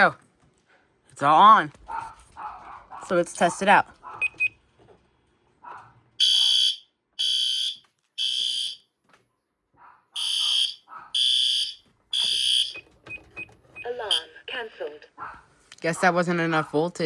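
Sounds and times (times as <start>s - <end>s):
fire alarm horn blasts: 6.2s - 8.8s, 10.2s - 12.9s, 14.1s - 14.4s.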